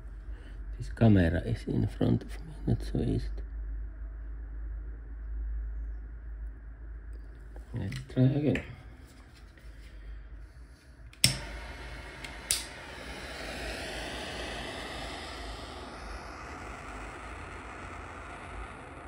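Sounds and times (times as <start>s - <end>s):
torch flame hissing: 10.4s - 19.0s
gas torch igniter click: 11.1s - 15.1s.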